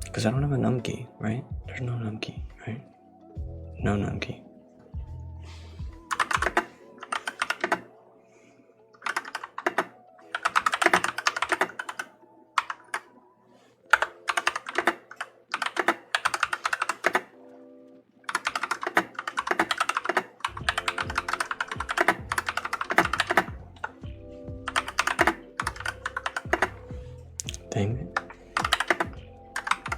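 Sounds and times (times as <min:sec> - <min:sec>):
mechanical keyboard typing: 0:06.1 - 0:07.9, 0:09.0 - 0:13.0, 0:13.9 - 0:17.3, 0:18.3 - 0:24.1, 0:24.7 - 0:29.9.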